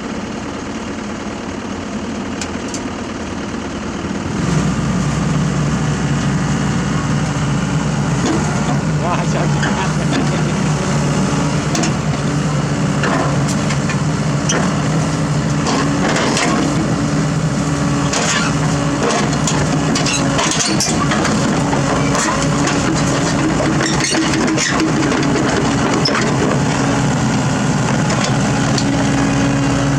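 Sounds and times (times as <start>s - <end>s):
diesel excavator engine running: 0.0s - 29.9s
knocks clanks and cracks: 18.1s - 26.5s.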